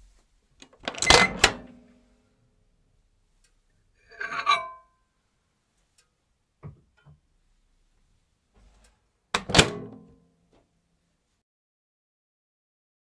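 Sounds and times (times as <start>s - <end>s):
latch click: 0.8s - 1.7s, 9.4s - 10.0s
microwave door rattling: 9.4s - 10.0s.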